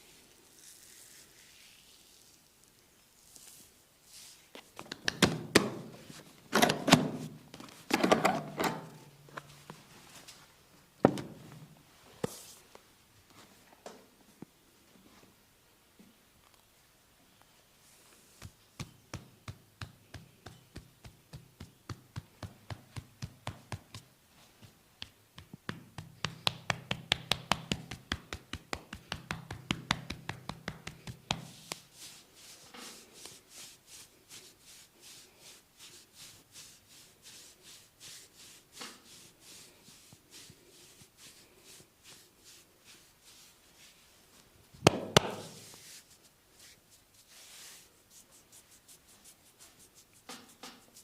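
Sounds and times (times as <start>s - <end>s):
hands slapping and patting skin: 4.6s - 5.9s, 18.3s - 35.2s, 44.8s - 51.0s.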